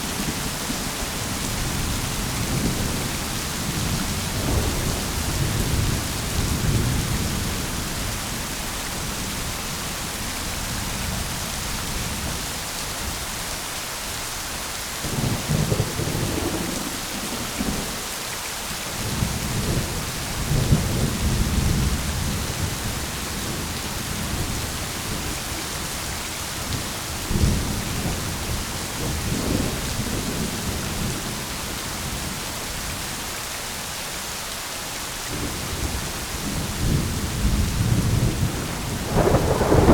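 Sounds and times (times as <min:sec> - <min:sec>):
steady rain: 0:00.0 - 0:39.9
thunder rumbling: 0:15.0 - 0:18.1, 0:35.3 - 0:39.9
sharp thunder crack: 0:37.4 - 0:39.9.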